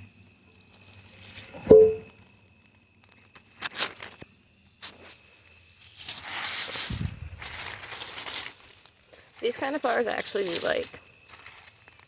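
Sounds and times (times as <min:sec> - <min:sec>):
cricket chirping: 0:00.0 - 0:12.0
plants being pulled up: 0:05.8 - 0:12.0.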